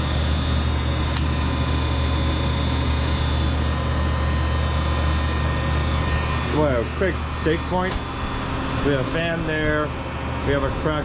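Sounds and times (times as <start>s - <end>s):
electric fan humming: 0.0s - 11.0s
sharp click: 1.1s - 1.3s.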